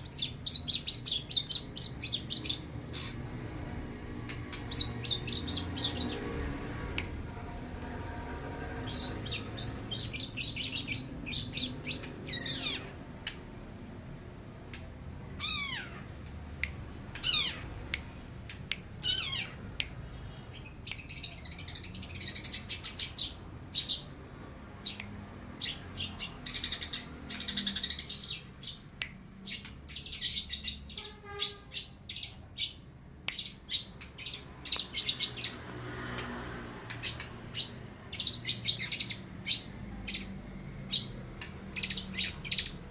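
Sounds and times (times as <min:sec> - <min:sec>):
bird chirps and trills: 0:00.0 - 0:03.3, 0:04.4 - 0:06.4, 0:07.8 - 0:13.4, 0:15.4 - 0:16.1, 0:17.2 - 0:17.8, 0:19.0 - 0:24.2, 0:24.8 - 0:35.7, 0:36.9 - 0:42.9
downward-sliding bird calls: 0:04.5 - 0:06.4, 0:07.8 - 0:13.0, 0:15.4 - 0:16.1, 0:17.2 - 0:17.8, 0:19.0 - 0:19.7.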